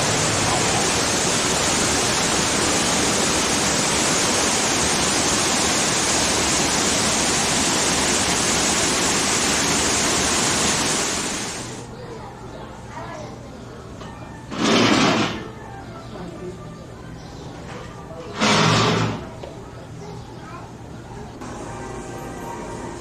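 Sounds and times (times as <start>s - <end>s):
waterfall splashing into pool: 0.0s - 11.8s.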